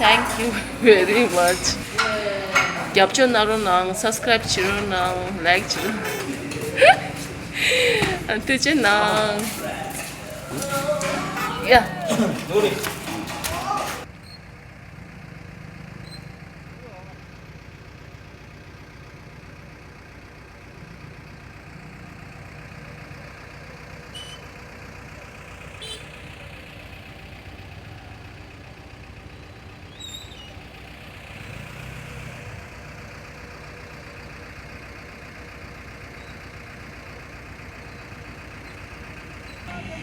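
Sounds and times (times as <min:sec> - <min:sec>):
heavy engine drone: 0:00.0 - 0:40.0.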